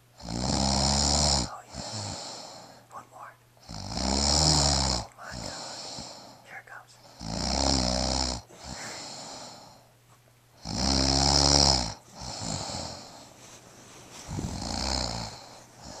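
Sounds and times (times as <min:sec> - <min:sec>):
person snoring: 0:00.2 - 0:09.8, 0:10.6 - 0:13.3, 0:14.2 - 0:16.0
soft breath out: 0:05.2 - 0:07.2, 0:08.5 - 0:09.9, 0:12.1 - 0:16.0.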